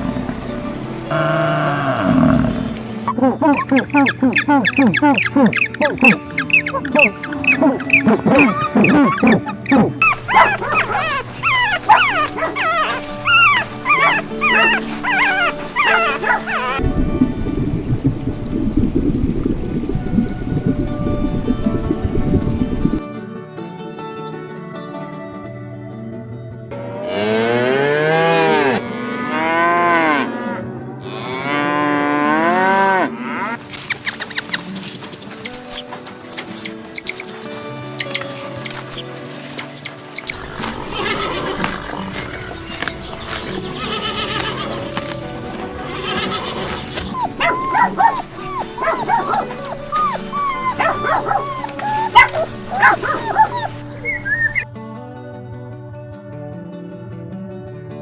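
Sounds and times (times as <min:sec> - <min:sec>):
background music: 0:00.0 - 0:58.0
cow mooing: 0:01.1 - 0:16.8, 0:27.0 - 0:33.6, 0:40.3 - 0:42.9, 0:45.8 - 0:54.6
horse whinny: 0:05.5 - 0:16.8, 0:40.2 - 0:42.6, 0:45.8 - 0:54.5
dog yapping high-pitched barks: 0:07.9 - 0:16.8, 0:47.2 - 0:53.7.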